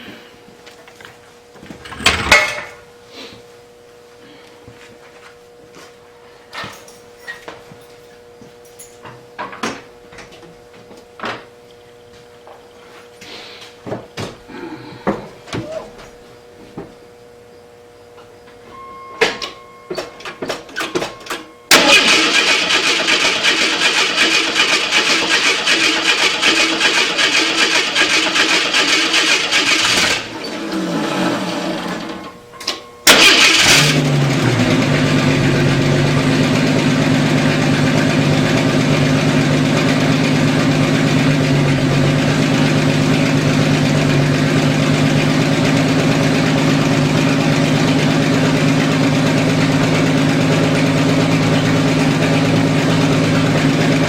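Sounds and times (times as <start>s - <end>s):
engine turning over: 1.8s - 2.7s, 21.7s - 32.3s, 33.0s - 54.0s
engine catching and idling: 20.7s - 32.2s, 33.0s - 54.0s.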